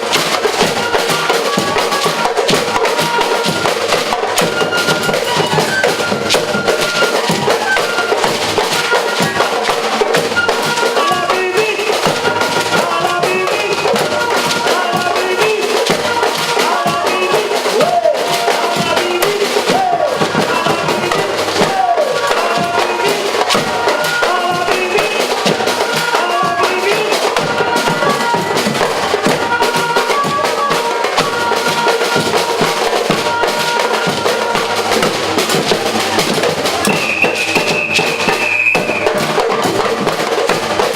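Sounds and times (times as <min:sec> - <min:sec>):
percussion band drumming: 0:00.0 - 0:40.9
short pitched notes: 0:34.3 - 0:39.2.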